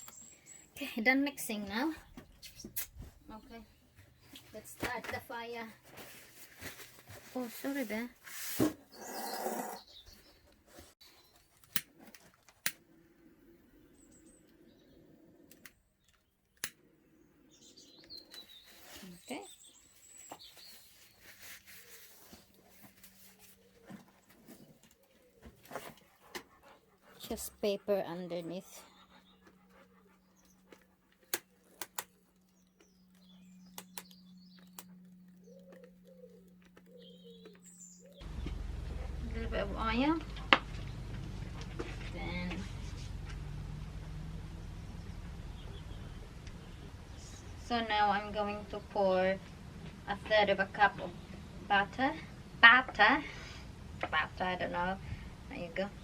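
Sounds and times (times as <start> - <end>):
small birds chirping: 0.0 - 5.8, 8.8 - 12.0, 12.8 - 38.7, 44.4 - 49.6
rustling: 4.1 - 9.0, 18.3 - 27.4
sharp clicks: 15.5 - 16.8, 31.2 - 37.7
pigeon cooing: 35.4 - 38.3.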